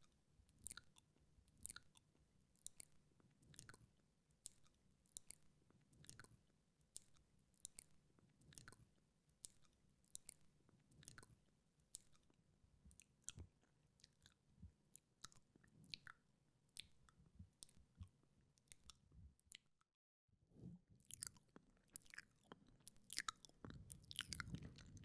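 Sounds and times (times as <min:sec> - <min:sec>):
lip smacks and tongue clicks: 0:00.6 - 0:02.0, 0:09.4 - 0:14.4, 0:15.0 - 0:16.2, 0:16.8 - 0:19.7, 0:21.1 - 0:25.0.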